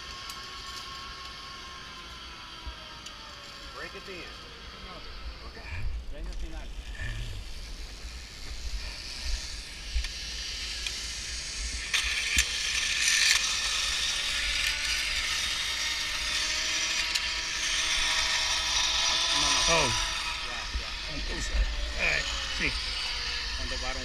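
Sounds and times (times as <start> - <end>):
rising whine: 0.0 - 24.0
zipline pulleys whirring on cable: 0.0 - 24.0.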